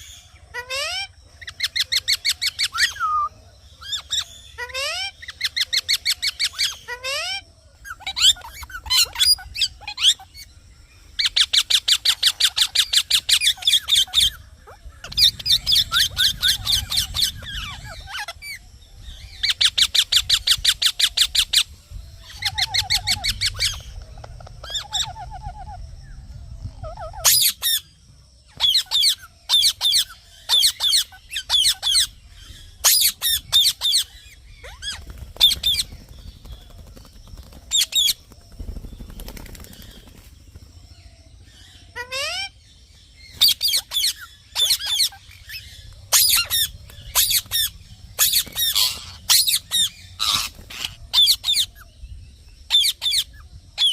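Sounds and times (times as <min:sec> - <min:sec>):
parrot chirping: 0:11.2 - 0:18.6, 0:43.3 - 0:51.8.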